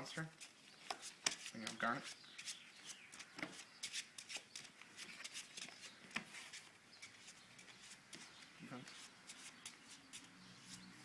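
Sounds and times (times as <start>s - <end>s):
cards clicking and rustling: 0.4s - 8.3s.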